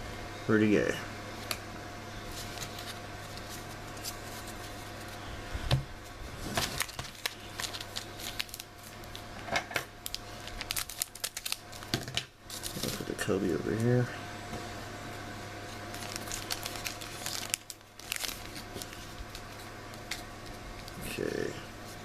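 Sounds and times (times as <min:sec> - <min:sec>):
steady low hum: 0:00.0 - 0:22.0
cards rustling and clicking: 0:02.3 - 0:05.2, 0:06.5 - 0:09.2.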